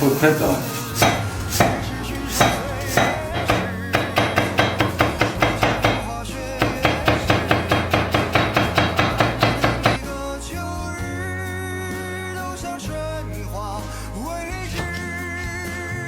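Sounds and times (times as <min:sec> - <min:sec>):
knife chopping on cutting board: 0:01.0 - 0:10.0.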